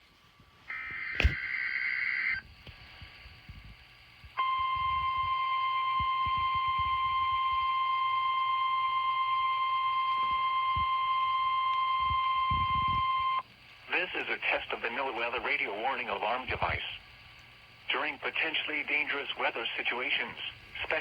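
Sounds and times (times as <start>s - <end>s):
harsh buzzing data burst: 0.7s - 2.4s
steady warning alarm tone: 4.4s - 13.4s.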